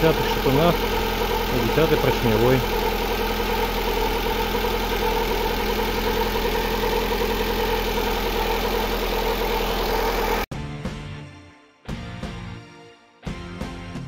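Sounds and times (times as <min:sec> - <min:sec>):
car engine idling: 0:00.0 - 0:10.5
music: 0:10.5 - 0:14.0.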